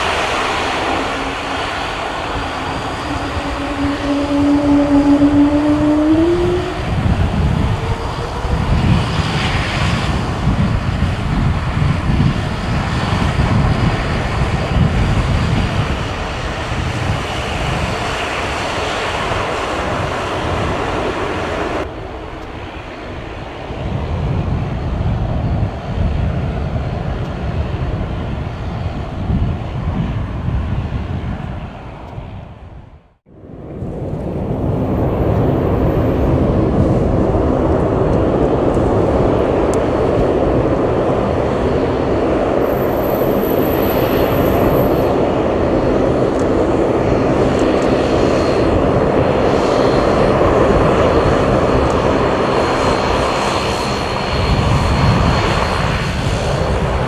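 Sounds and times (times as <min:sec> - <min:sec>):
jet engine roar: 0:00.0 - 0:57.0.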